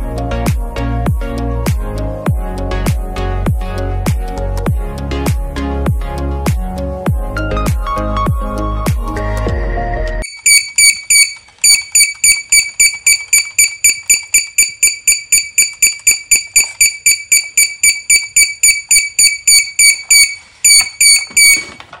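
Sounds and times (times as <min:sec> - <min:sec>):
alarm buzzer beeping: 0:10.2 - 0:22.0.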